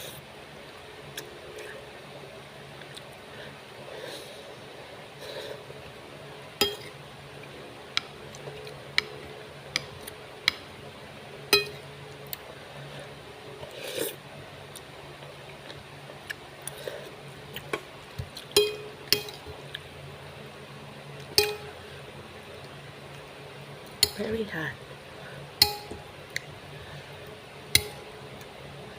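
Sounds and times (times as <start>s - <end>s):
utensils clinking against a dish: 18.6s - 19.5s, 24.0s - 24.3s.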